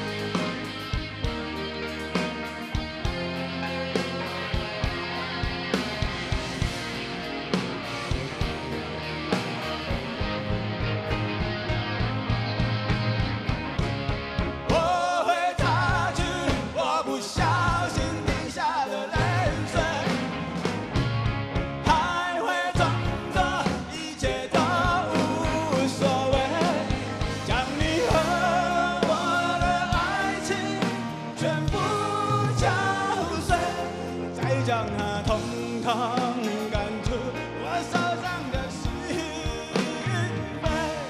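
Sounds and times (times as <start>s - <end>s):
bass: 0.0s - 41.0s
drums: 0.0s - 41.0s
wavering melodic lead line: 0.0s - 41.0s
person singing: 14.7s - 20.3s, 21.8s - 41.0s.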